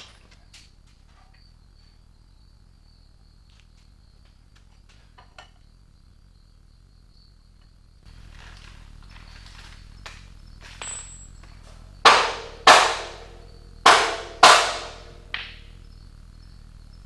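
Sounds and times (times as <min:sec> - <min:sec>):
hammer striking metal: 0:12.1 - 0:15.6.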